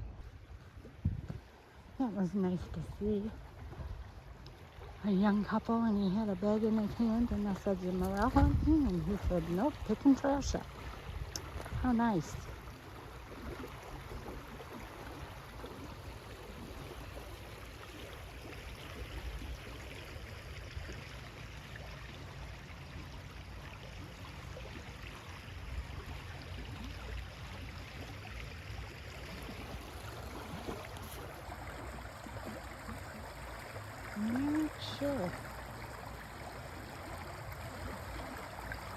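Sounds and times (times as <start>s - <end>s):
river water flowing: 0.0s - 38.9s.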